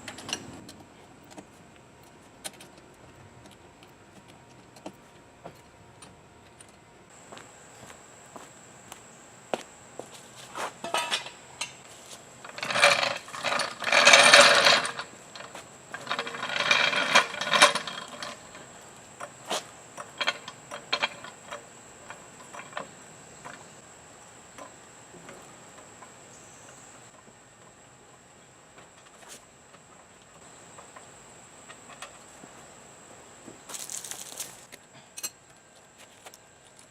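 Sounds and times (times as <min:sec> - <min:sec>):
metal tools rasping: 0:12.5 - 0:18.6.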